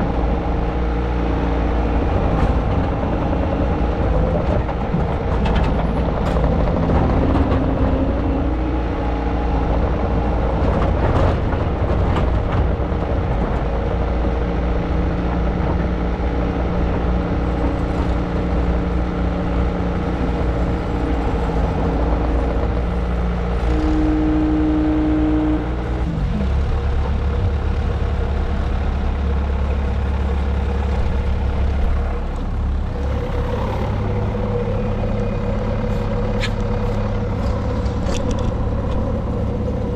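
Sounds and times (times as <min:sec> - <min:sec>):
diesel engine running under load: 0:00.0 - 0:39.9
hydraulic whine: 0:31.4 - 0:39.9.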